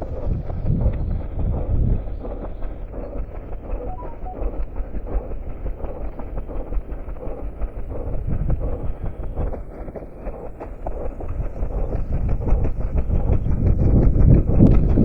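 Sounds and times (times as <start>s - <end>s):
wind buffeting microphone: 0.0s - 3.5s, 11.1s - 15.0s.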